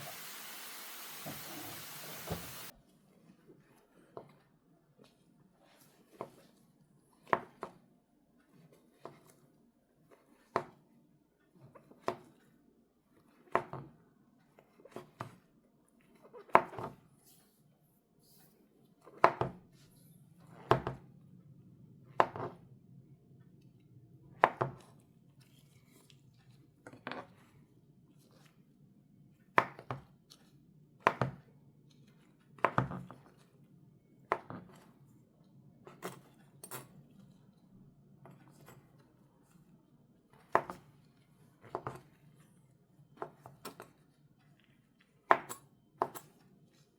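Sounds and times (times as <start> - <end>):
knife knocking on cutting board: 1.1 - 2.7.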